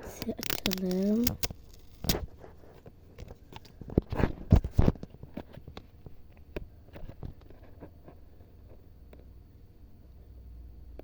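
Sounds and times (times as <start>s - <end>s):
paper packet crinkling: 0.0s - 2.4s.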